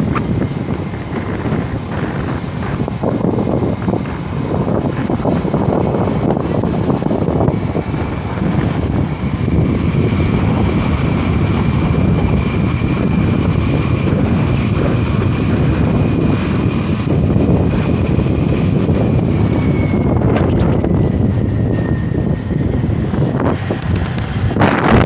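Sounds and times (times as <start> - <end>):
vehicle moving through traffic: 0.0 - 25.0
wind rumble on microphone: 0.0 - 25.0
faint high whine: 19.1 - 23.7.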